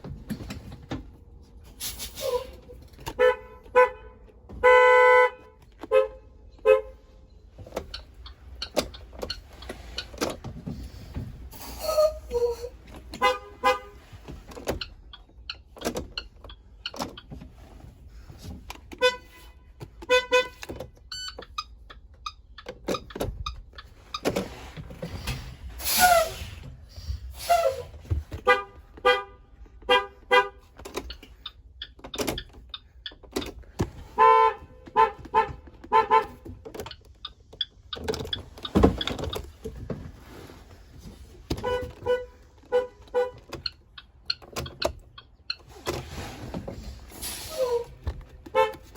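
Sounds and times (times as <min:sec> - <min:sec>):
school bus horn honking: 0:01.8 - 0:07.1, 0:11.8 - 0:14.2, 0:18.9 - 0:21.3, 0:25.8 - 0:26.5, 0:27.4 - 0:30.7, 0:34.0 - 0:36.6, 0:41.5 - 0:43.7, 0:47.1 - 0:48.9.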